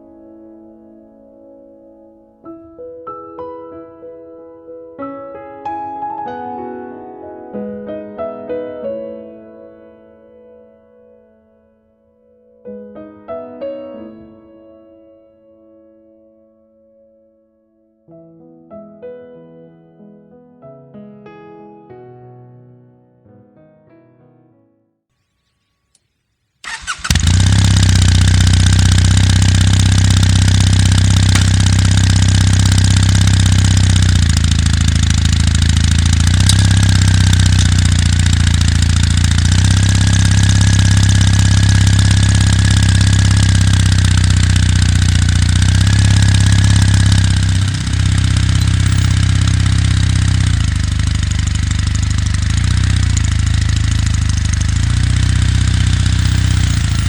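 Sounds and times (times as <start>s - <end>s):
motorcycle engine idling: 26.6s - 57.0s.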